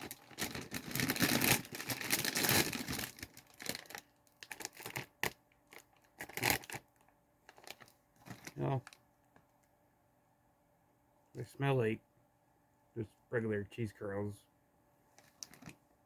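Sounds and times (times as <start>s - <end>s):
snack bag crinkling: 0.0s - 9.0s, 15.2s - 15.8s.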